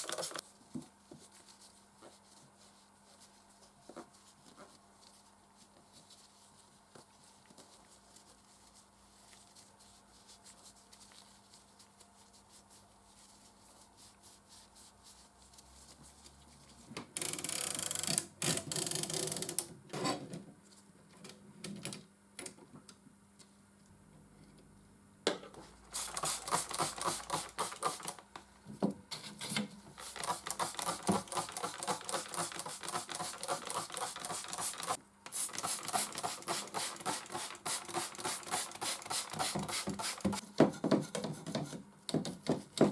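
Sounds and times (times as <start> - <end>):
quick typewriter strokes: 30.0 - 40.4.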